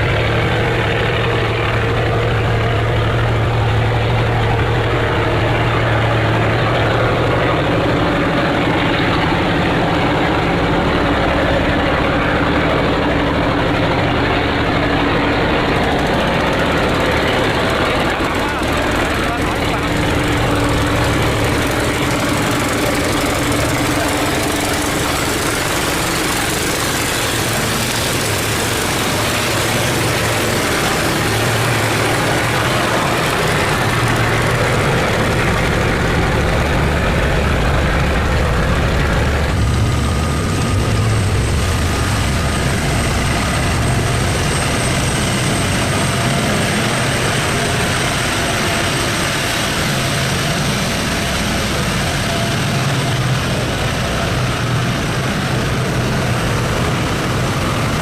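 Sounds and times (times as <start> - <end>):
boat engines humming: 0.0 - 58.0
water wash: 0.0 - 58.0.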